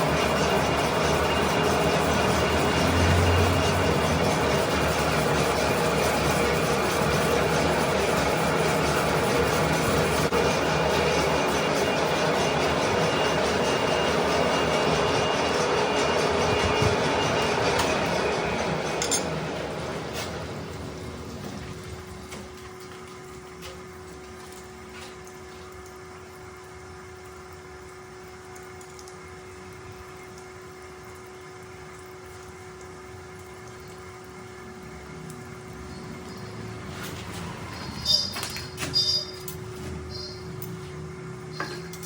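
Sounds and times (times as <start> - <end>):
lathe cutting metal: 0.0 - 20.8
lathe humming with whine: 0.0 - 22.9.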